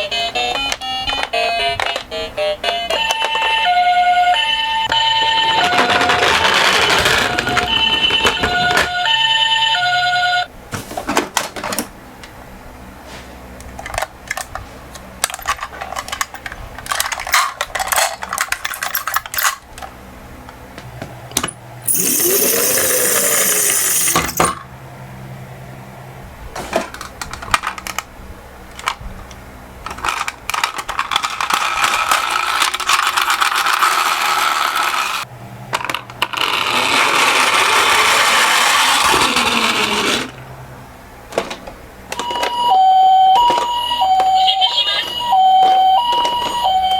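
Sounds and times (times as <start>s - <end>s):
toy cars clattering down a slope: 21.9s - 24.6s, 29.9s - 35.2s, 35.8s - 40.4s.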